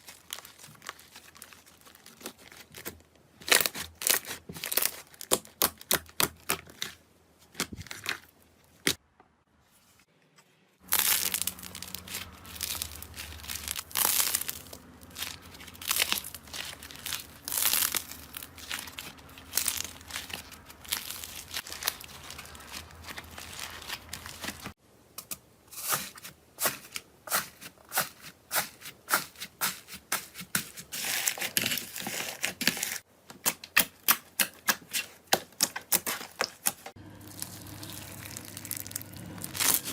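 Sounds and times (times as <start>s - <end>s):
slime crackling and popping: 10.8s - 24.7s, 35.3s - 39.9s.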